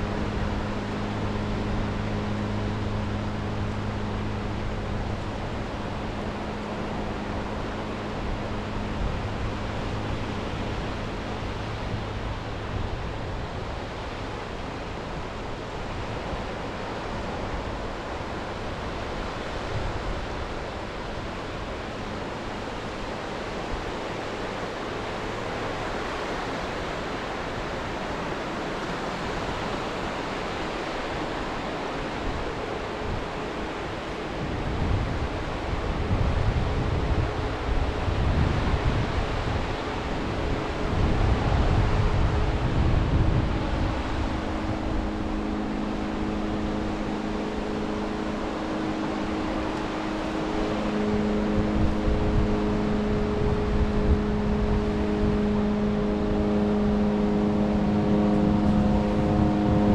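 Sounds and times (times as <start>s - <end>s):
steady wind: 0.0s - 59.9s
wind buffeting microphone: 0.0s - 59.9s
sea waves washing onto shore: 14.6s - 34.4s
faint low hum: 22.1s - 33.4s.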